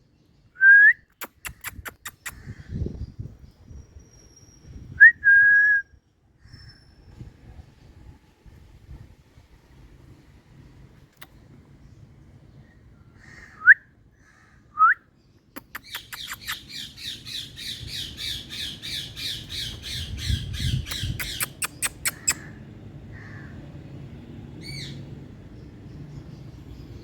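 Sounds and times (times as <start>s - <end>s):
parrot squawking and chattering: 1.2s - 2.5s, 15.6s - 22.6s.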